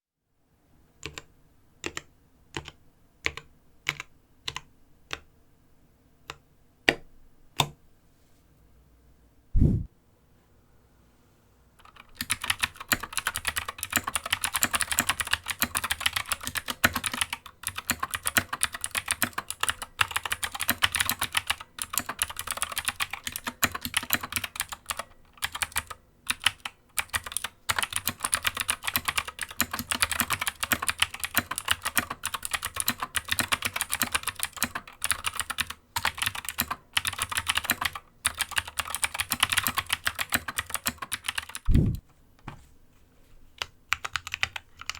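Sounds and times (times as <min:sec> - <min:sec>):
mechanical keyboard typing: 0:01.0 - 0:05.3, 0:11.8 - 0:42.0, 0:43.6 - 0:44.9.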